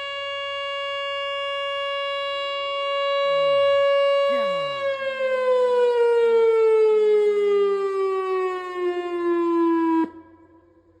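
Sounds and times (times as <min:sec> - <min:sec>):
warning siren winding down: 0:00.0 - 0:11.0.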